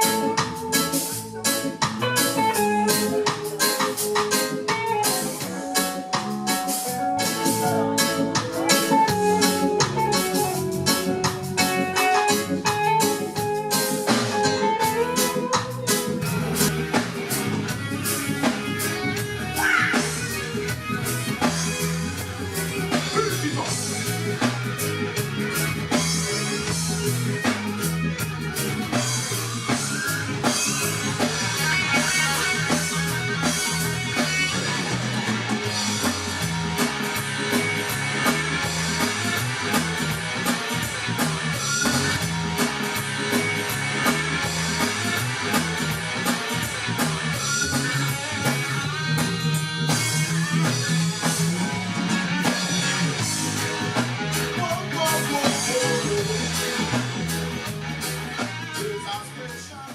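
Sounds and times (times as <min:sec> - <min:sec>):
bass line: 0:00.0 - 0:59.9
drum kit: 0:00.0 - 0:59.9
electric guitar: 0:00.0 - 0:59.9.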